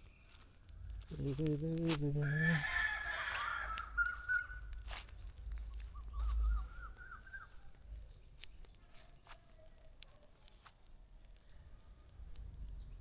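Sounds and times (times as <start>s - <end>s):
chicken calling: 1.1s - 5.0s, 5.7s - 7.8s.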